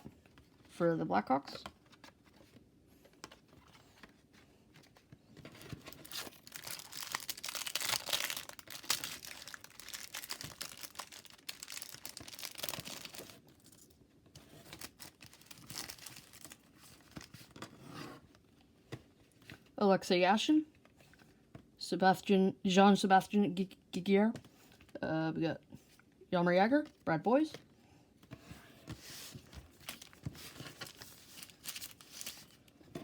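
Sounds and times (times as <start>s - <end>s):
foil wrapper crinkling and tearing: 5.9s - 13.9s, 14.7s - 17.3s, 29.8s - 32.6s.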